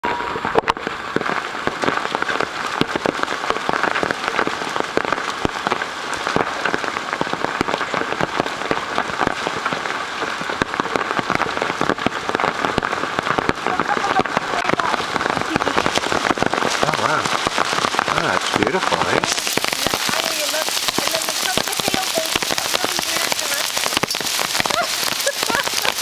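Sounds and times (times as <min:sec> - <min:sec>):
heavy rain: 0:00.0 - 0:26.0
hailstones clattering on hard surfaces: 0:00.9 - 0:26.0.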